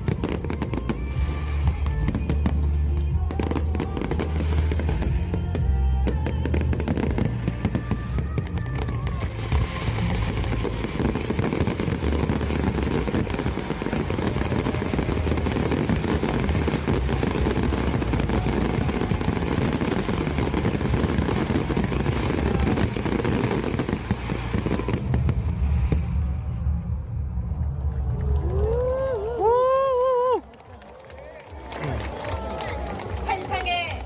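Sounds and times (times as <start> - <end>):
fireworks bursts and crackles: 0.0 - 34.0
low fireworks rumble: 0.0 - 34.0.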